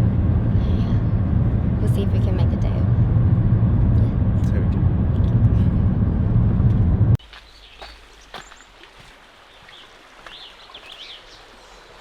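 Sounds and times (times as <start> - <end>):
car road rumble: 0.0 - 7.2
birds chirping: 7.2 - 12.0.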